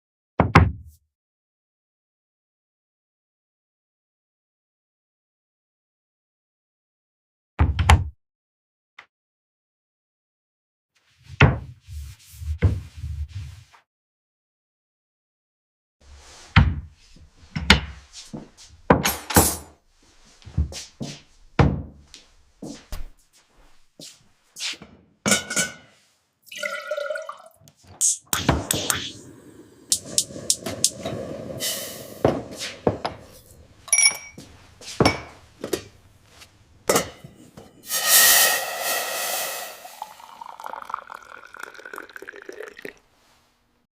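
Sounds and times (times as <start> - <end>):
dishes and glass clinking: 25.3 - 25.9, 32.2 - 35.9, 36.9 - 37.9
running water filling a vessel: 26.5 - 27.6, 37.9 - 43.0.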